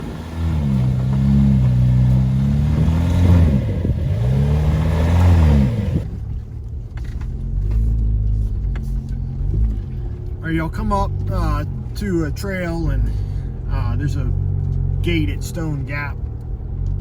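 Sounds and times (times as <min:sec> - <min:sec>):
engine revving: 0:00.0 - 0:06.2.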